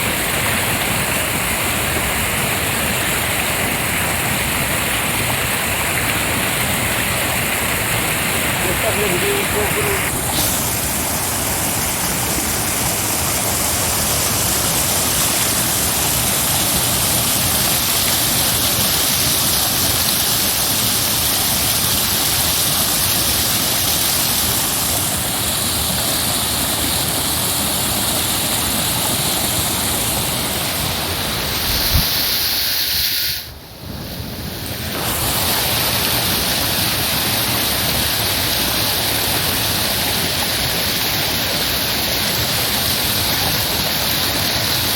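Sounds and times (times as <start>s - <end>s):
heavy rushing water: 0.0s - 44.9s.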